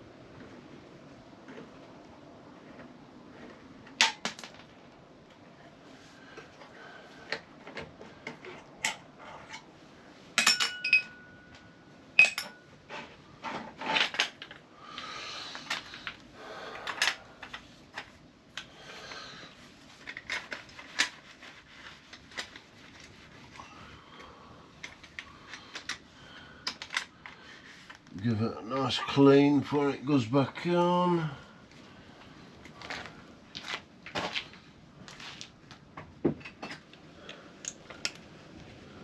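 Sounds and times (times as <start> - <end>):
metal tools clinking and knocking: 10.4 - 12.7.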